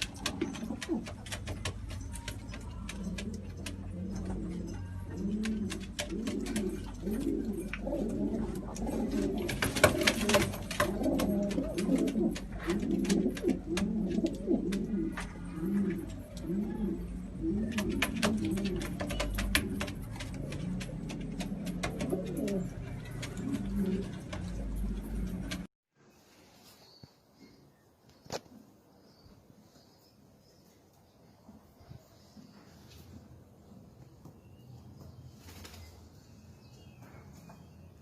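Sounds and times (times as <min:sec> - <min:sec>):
pigeons cooing: 0:00.0 - 0:25.7.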